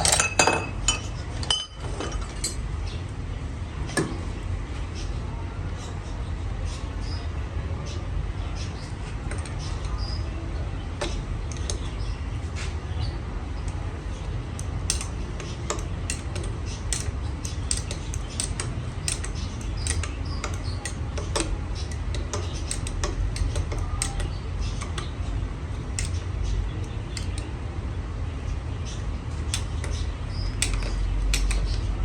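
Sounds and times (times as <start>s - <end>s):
workshop machinery humming: 0.0s - 32.0s
light metallic clicks: 14.6s - 25.2s, 25.9s - 27.5s, 28.9s - 32.0s.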